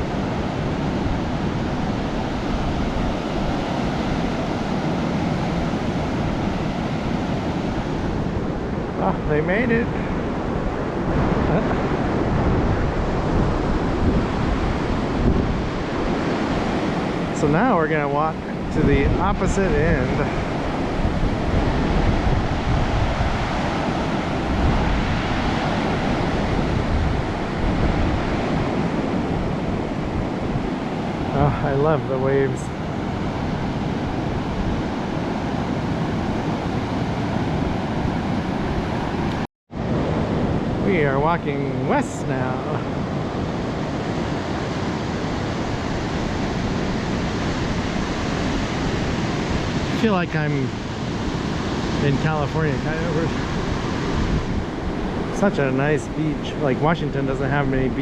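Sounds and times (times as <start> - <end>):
ocean surf washing onto beach: 0.0 - 58.0
wind buffeting microphone: 0.0 - 58.0.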